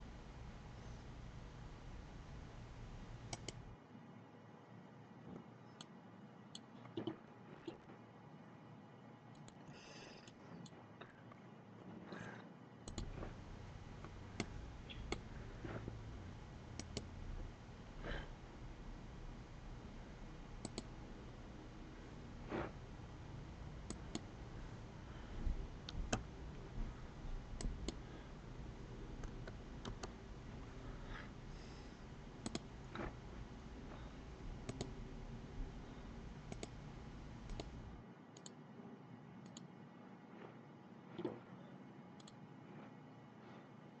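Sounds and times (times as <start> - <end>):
faint steady hiss: 0.0 - 4.0, 12.9 - 38.5
faint low hum: 0.0 - 44.0
computer mouse clicking: 3.2 - 3.7, 9.3 - 10.8, 12.8 - 13.4, 14.0 - 15.9, 16.7 - 17.2, 20.6 - 21.0, 23.8 - 24.3, 25.8 - 26.3, 27.6 - 28.1, 29.2 - 30.2, 32.4 - 33.2, 33.9 - 35.0, 36.4 - 37.8, 38.4 - 38.6, 39.4 - 39.7, 42.2 - 42.4.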